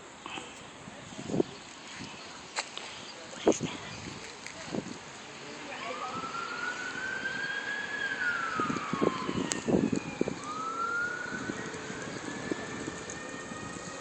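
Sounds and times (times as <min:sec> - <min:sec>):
siren wailing: 0:05.6 - 0:14.0.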